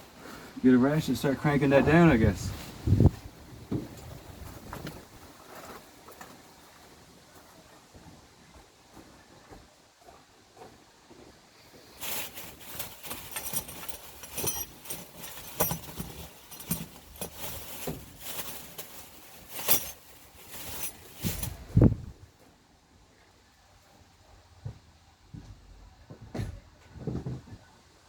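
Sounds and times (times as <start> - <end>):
rustling: 0.0 - 6.6, 11.6 - 22.4
metal tools clinking and rattling: 12.0 - 21.7.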